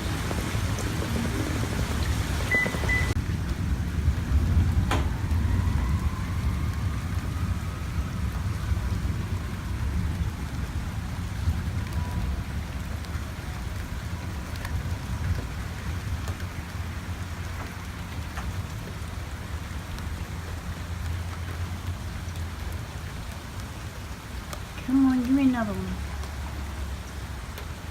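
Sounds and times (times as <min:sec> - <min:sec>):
raindrop clicks: 0:00.0 - 0:07.4, 0:11.2 - 0:27.9
low thunder rumble: 0:00.0 - 0:19.2
steady rain: 0:00.0 - 0:27.9.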